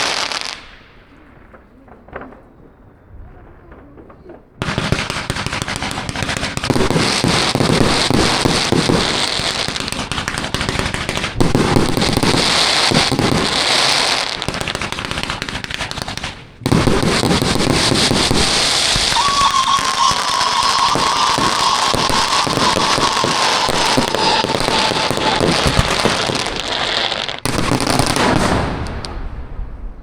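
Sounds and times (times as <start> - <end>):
firework cake firing with crackling: 0.0 - 30.0
high whistling tone: 19.0 - 25.7.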